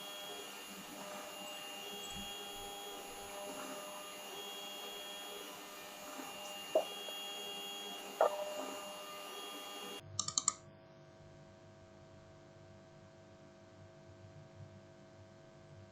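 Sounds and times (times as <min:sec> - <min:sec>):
high whine: 0:00.0 - 0:10.0
machine hum: 0:00.0 - 0:10.0
short clicks: 0:10.1 - 0:10.6.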